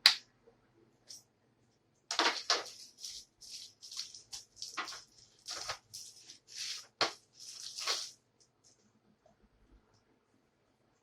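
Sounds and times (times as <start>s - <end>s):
scrapes and rustles of plastic: 2.1s - 8.2s.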